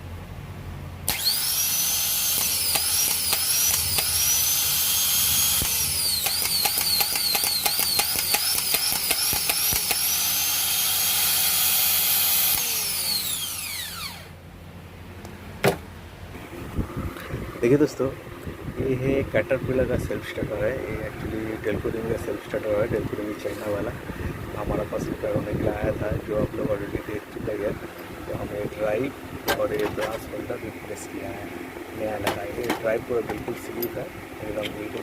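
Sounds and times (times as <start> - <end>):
starter motor whining: 1.0 - 14.4
sharp click: 5.6 - 10.0.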